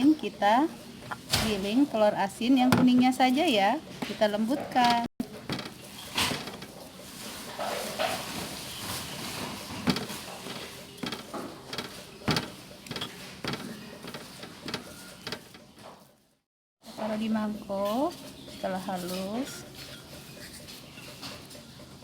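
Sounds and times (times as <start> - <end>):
utensil scraping a dish: 17.7 - 21.5.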